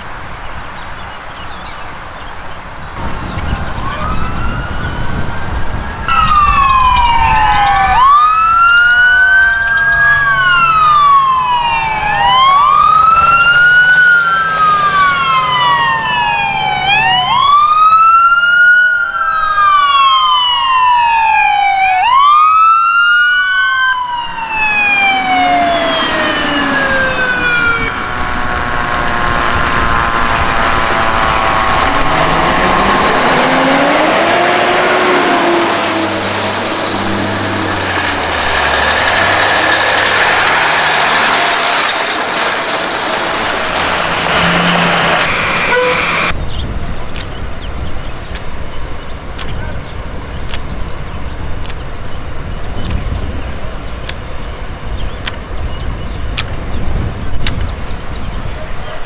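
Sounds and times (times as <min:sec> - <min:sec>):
emergency siren wailing: 0:03.0 - 0:46.4.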